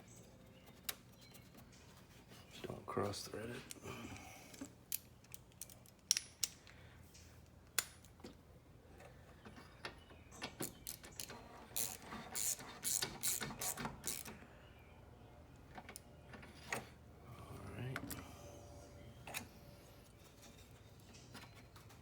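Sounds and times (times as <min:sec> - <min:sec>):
ratchet wrench clicking: 0:11.8 - 0:14.3.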